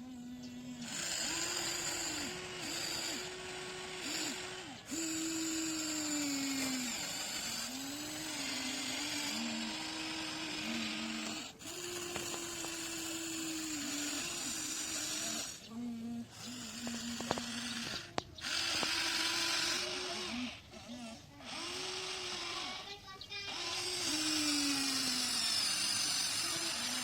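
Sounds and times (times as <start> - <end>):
electric motors whining: 0.0 - 27.0.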